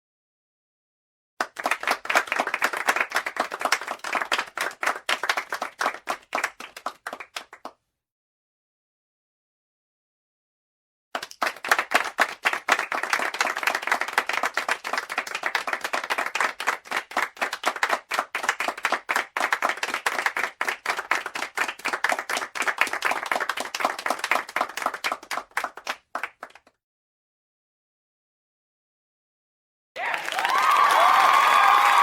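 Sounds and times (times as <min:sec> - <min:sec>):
crowd applauding: 0:01.4 - 0:07.7, 0:11.2 - 0:26.7, 0:30.0 - 0:32.0.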